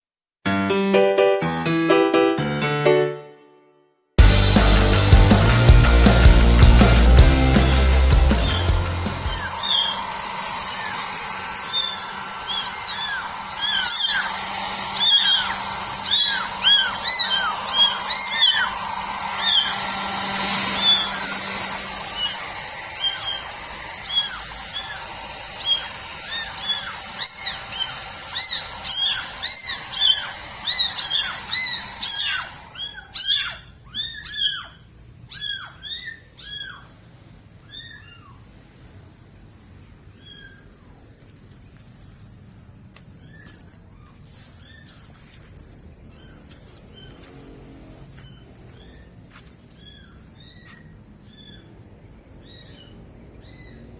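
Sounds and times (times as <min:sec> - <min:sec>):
steady hiss: 0:04.2 - 0:33.3
kittens mewing: 0:08.2 - 0:38.6.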